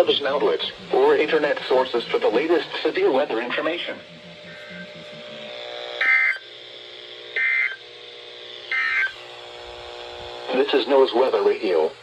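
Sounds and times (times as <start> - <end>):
digital data bursts: 0.0 - 6.5, 7.3 - 7.8, 8.7 - 9.2
faint receiver hum: 0.0 - 10.8.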